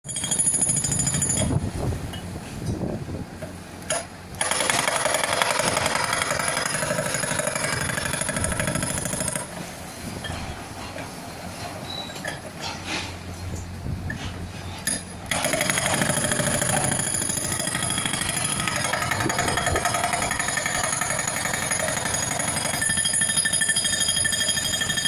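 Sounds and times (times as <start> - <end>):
hydraulic rock breaker hammering: 3.9 - 9.6, 14.8 - 25.0.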